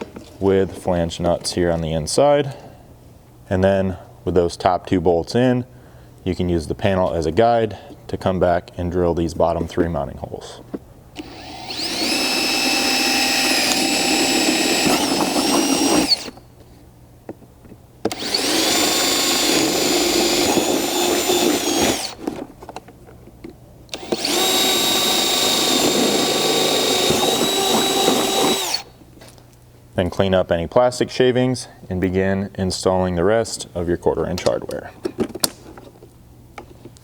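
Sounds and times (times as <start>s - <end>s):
power drill drilling through plastic: 11.2s - 16.4s, 18.1s - 22.2s, 24.0s - 28.9s.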